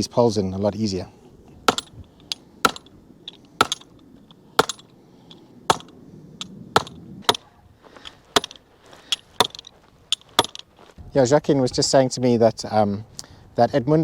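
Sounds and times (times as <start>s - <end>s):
hammer striking fence poles: 1.7s - 3.0s, 3.6s - 4.0s, 4.6s - 4.9s, 5.7s - 6.0s, 6.8s - 7.5s, 8.4s - 10.6s.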